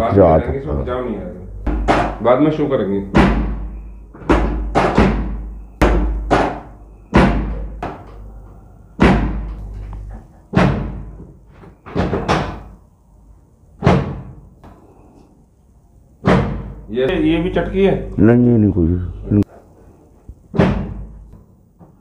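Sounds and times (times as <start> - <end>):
heavy booming drum hits: 3.1 - 3.7.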